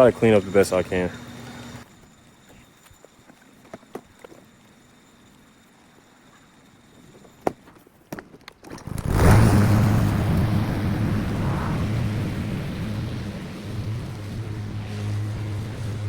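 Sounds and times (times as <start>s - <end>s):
lawn mower engine running: 8.6s - 16.0s.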